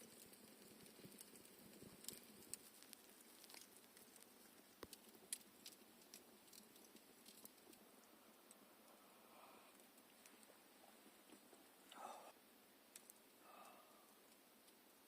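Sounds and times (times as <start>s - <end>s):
faint crackles and ticks: 0.0s - 15.0s.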